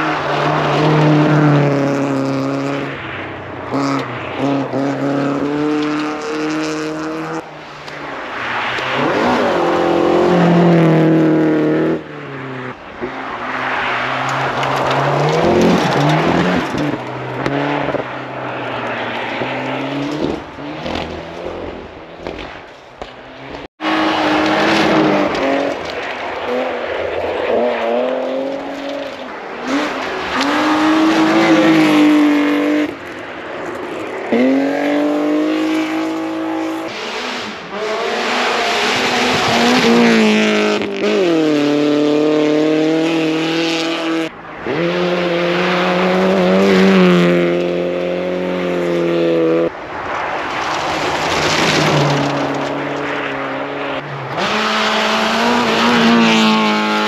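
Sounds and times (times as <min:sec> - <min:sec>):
rally cars racing past: 0:00.0 - 0:57.0.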